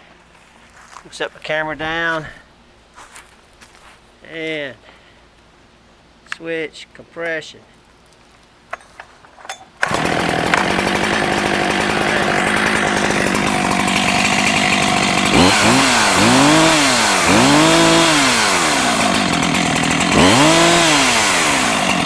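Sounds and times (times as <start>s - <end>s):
chainsaw pull-start: 9.6s - 22.0s
chainsaw engine revving: 9.8s - 22.0s.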